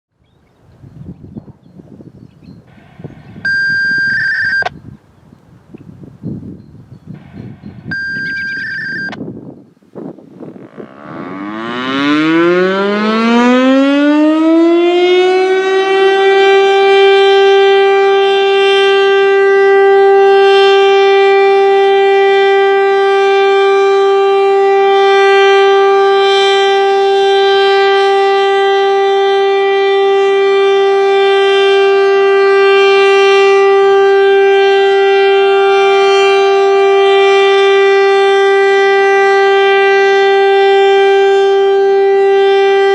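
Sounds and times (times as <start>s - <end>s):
warning siren winding up: 2.7s - 4.8s, 7.1s - 9.3s, 10.5s - 42.9s
short beep: 3.4s - 4.8s, 6.6s - 9.2s.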